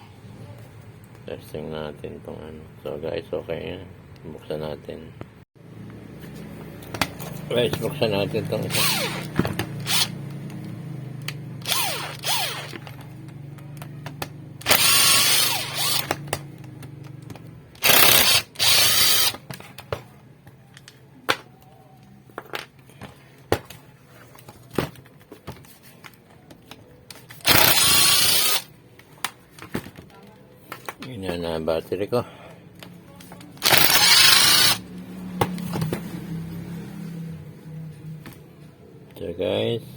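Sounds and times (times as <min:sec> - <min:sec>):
cordless drill running: 0:08.6 - 0:10.2, 0:11.6 - 0:12.9, 0:14.6 - 0:16.2, 0:17.8 - 0:19.4, 0:27.4 - 0:28.7, 0:33.6 - 0:34.8.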